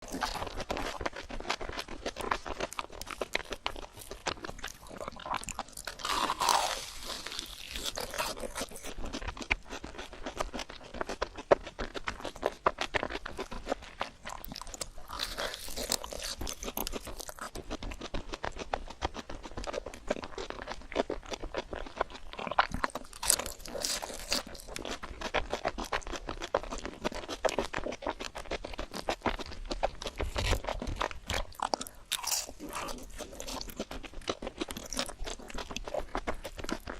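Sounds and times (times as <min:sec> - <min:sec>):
rapid chewing and crunching: 0:00.0 - 0:36.9.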